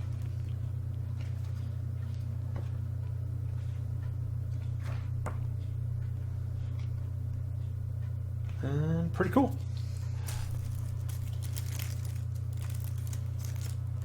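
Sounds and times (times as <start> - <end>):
steady low hum: 0.0 - 14.0
book pages turning: 10.2 - 14.0.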